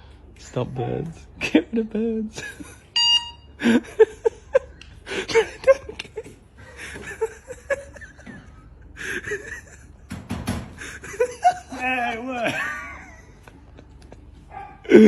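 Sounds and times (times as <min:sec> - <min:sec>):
person chuckling: 0:03.6 - 0:10.0, 0:10.8 - 0:15.0.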